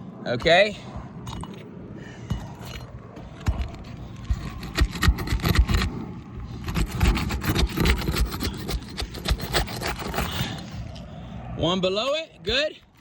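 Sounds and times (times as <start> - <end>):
scraping of roof shingles: 2.3 - 11.0.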